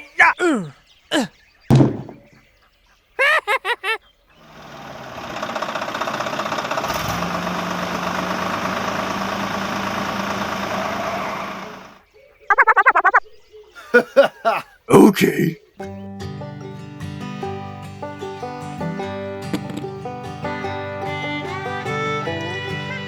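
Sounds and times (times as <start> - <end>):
short high-pitched sounds: 12.5 - 13.3.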